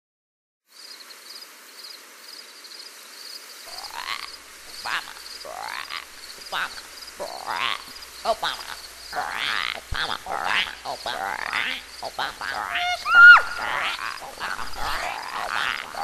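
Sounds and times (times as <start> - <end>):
frog call sweeping upward: 3.7 - 16.0
frog pulsed trill: 3.7 - 16.0.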